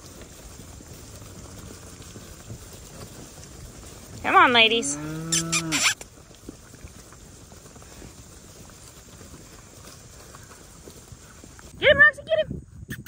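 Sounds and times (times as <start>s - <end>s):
faint pasture background: 0.0s - 13.0s
woman calling cattle: 4.2s - 6.0s, 11.8s - 12.6s.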